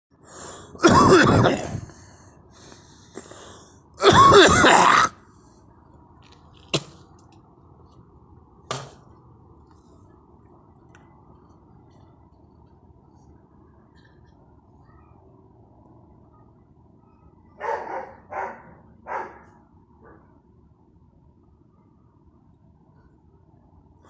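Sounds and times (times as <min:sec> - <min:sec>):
faint hum: 0:00.1 - 0:24.0
person coughing: 0:00.7 - 0:02.0, 0:04.0 - 0:05.1.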